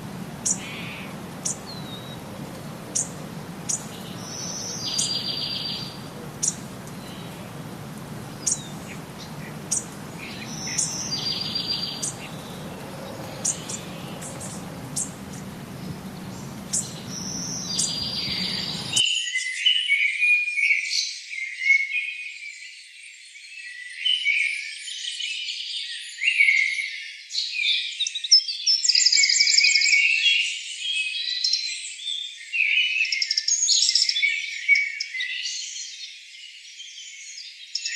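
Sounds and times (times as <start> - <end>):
bird chirping: 0.0 - 19.0
steady low hum: 0.0 - 19.0
warbling birdsong: 0.0 - 19.0.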